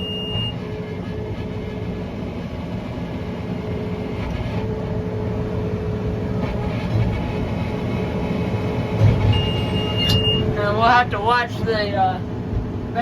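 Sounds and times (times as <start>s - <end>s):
tractor engine under load: 0.0s - 13.0s.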